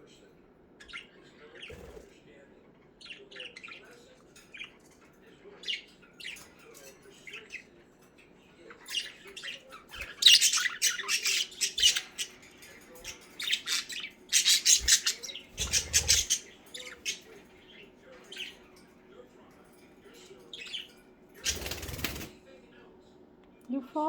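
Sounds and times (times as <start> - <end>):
budgerigars chattering and squawking: 0.7 - 22.3.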